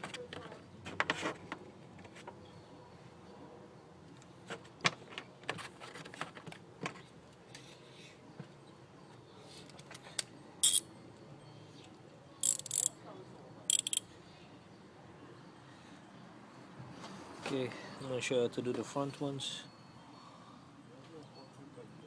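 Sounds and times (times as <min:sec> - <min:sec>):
jingling rattle: 0:12.4 - 0:12.9, 0:13.7 - 0:14.0
metal hand tools clinking: 0:12.4 - 0:12.9, 0:13.7 - 0:14.0.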